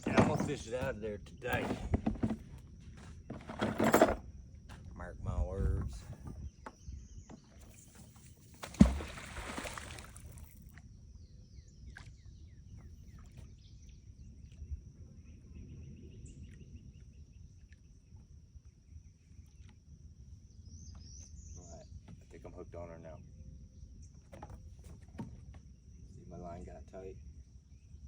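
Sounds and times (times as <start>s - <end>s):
magnet splashing into water: 8.6s - 10.8s.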